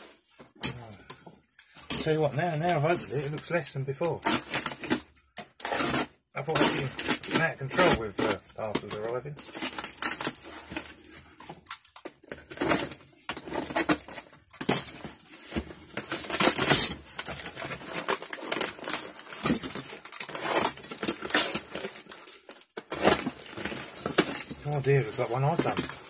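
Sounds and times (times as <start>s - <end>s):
packaging rustling and crinkling: 6.6s - 26.0s.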